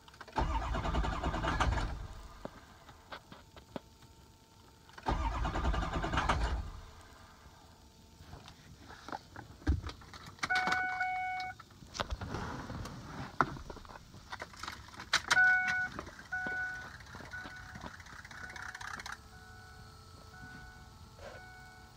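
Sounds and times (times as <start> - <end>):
key clicking in ignition: 10.2 - 11.6, 14.4 - 19.2
vehicle warning chime: 10.5 - 11.6, 15.3 - 21.9.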